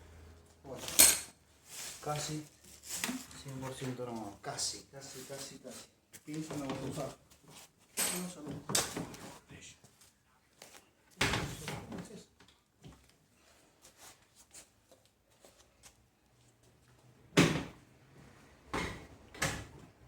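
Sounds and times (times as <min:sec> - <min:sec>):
tools clicking and rattling: 0:08.0 - 0:08.9.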